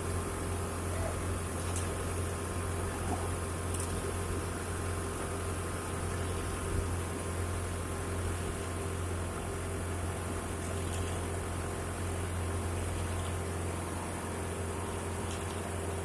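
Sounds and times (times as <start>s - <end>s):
diesel truck engine drone: 0.0s - 16.0s
steady hum: 0.0s - 16.0s.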